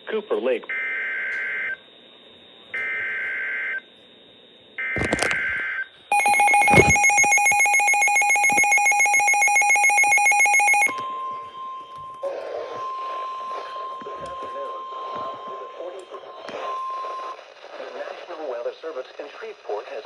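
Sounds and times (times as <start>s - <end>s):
steady warning alarm tone: 4.8s - 17.4s
thumps: 5.0s - 5.5s, 6.1s - 8.8s
buzzing data tones: 5.0s - 11.1s
weather radio alert beeping: 6.1s - 17.4s.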